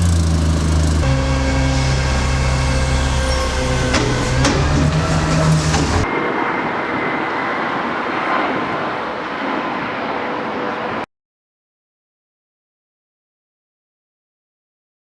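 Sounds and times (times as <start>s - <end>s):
bus engine humming: 0.0s - 6.1s
steady rushing rattle: 0.0s - 6.1s.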